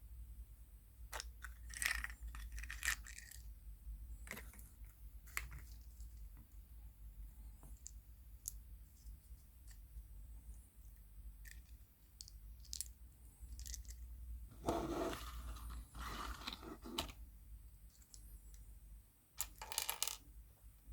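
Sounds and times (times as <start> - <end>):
plastic toys clicking and tapping: 11.4 - 14.0, 19.4 - 20.2
crinkly wrapping rustling: 14.6 - 17.1.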